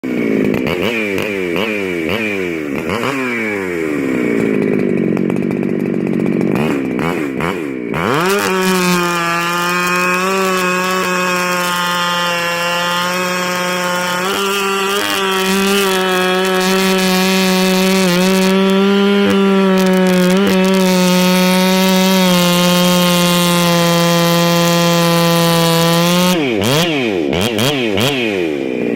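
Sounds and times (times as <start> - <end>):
chainsaw revving: 0.0 - 28.9.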